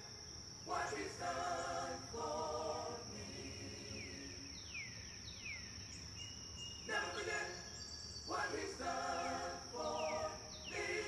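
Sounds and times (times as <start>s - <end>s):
high-pitched insect trill: 0.0s - 11.0s
birds calling: 3.5s - 11.0s.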